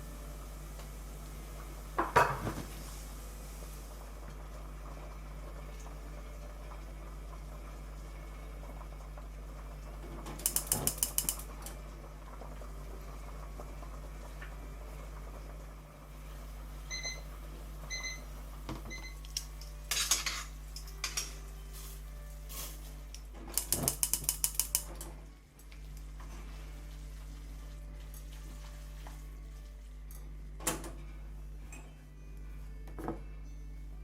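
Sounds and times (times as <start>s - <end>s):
utensils clattering against dishes: 2.0s - 2.7s, 10.3s - 11.4s, 19.4s - 21.5s, 23.4s - 25.1s.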